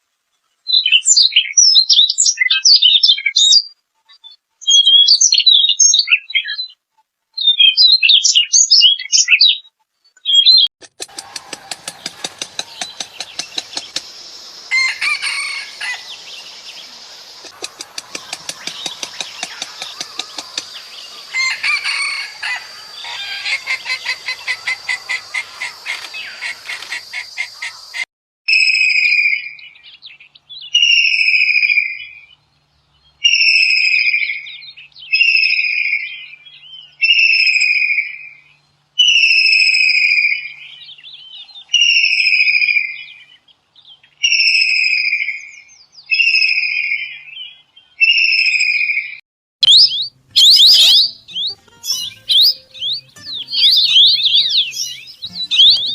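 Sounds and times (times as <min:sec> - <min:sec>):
birds chirping and chattering: 0:07.4 - 0:28.0, 0:49.6 - 0:55.9
bird giving loud clear calls: 0:11.0 - 0:28.0, 0:49.7 - 0:55.9.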